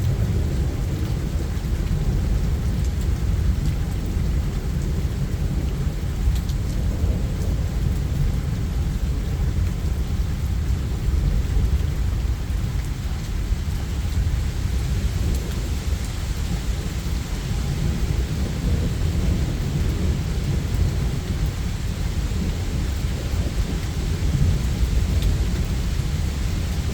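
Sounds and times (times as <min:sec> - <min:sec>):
heavy rain: 0:00.0 - 0:26.9
low rumble of thunder: 0:00.0 - 0:26.9.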